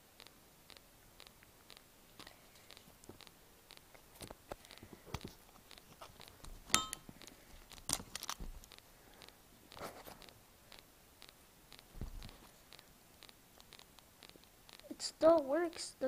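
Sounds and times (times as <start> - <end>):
faint repeating tick: 0.0 - 6.5, 8.6 - 16.0
sharp clink: 6.7 - 7.1
plastic pieces clicking and rattling: 7.7 - 8.8.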